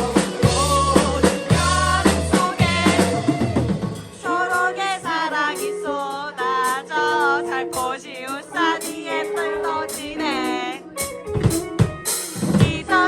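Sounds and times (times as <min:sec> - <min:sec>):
person singing melody: 0:12.5 - 0:13.0.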